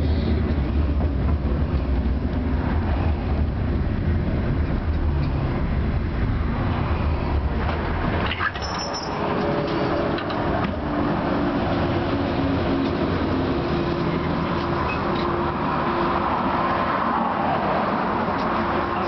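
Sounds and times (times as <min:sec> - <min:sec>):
tram rumbling on track: 0:00.0 - 0:19.0
high-pitched wheel squeal: 0:08.3 - 0:10.0.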